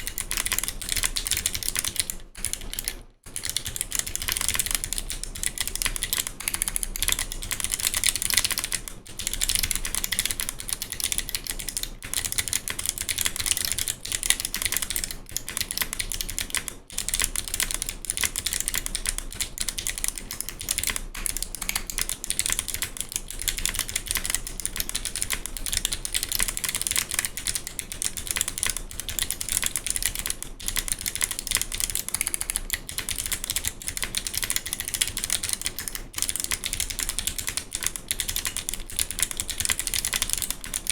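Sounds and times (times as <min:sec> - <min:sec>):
typing on clicky mechanical keyboard: 0:00.0 - 0:40.9.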